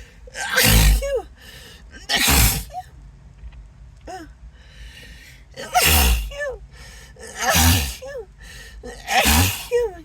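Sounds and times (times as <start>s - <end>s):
person sneezing: 0.0s - 1.2s, 2.1s - 2.8s, 5.6s - 6.5s, 7.4s - 8.1s, 9.0s - 9.9s
breathy intake of breath: 4.5s - 9.7s.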